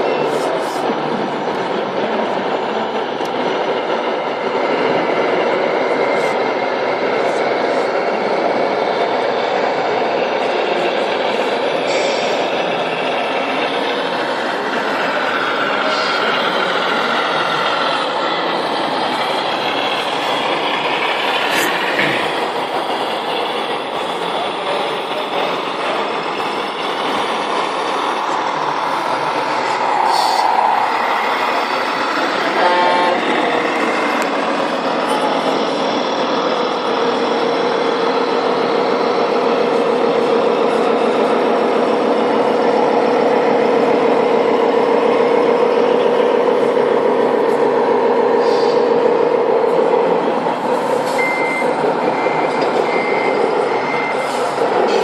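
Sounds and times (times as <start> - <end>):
toy truck horn toot: 32.6 - 33.2.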